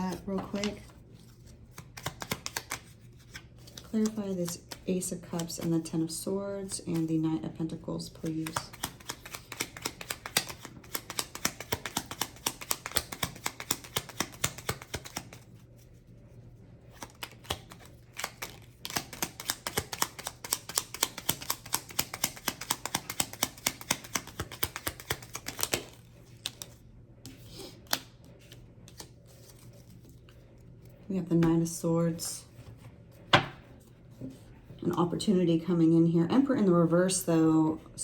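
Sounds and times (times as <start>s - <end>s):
cards being shuffled: 0.0s - 5.8s, 8.2s - 15.4s, 16.9s - 31.1s.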